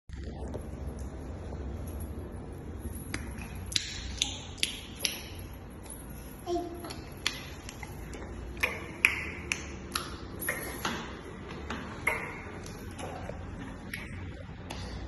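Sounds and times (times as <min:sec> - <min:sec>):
baby making clicking sounds: 0:06.5 - 0:07.9.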